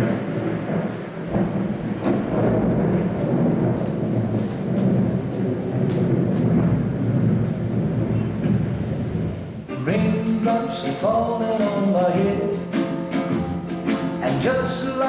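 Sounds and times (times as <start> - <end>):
rain: 0.0 - 15.0
thunder rumbling: 0.0 - 15.0
faint raindrop ticks: 0.7 - 8.7.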